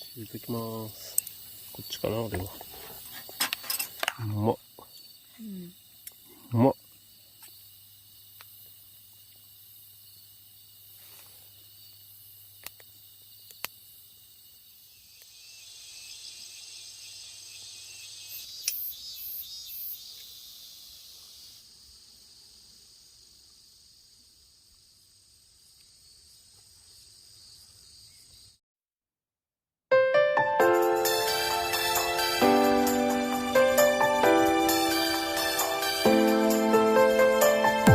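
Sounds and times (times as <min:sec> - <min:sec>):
crickets chirping: 0:00.0 - 0:28.6, 0:30.6 - 0:37.9
music: 0:29.9 - 0:37.9.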